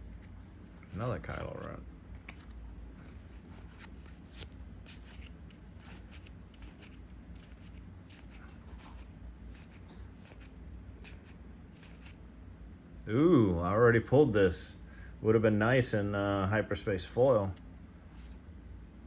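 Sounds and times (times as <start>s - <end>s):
trading cards sliding and rubbing: 0.0s - 12.2s, 18.0s - 18.4s.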